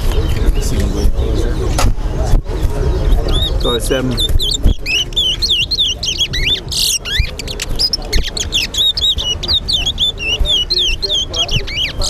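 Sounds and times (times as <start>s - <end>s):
finches whistling: 2.9s - 12.0s.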